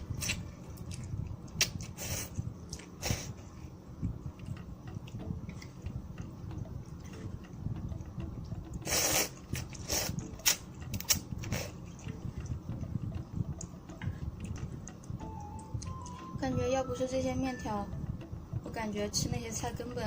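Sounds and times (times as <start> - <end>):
person chewing noodles: 0.0 - 5.8, 6.6 - 15.1.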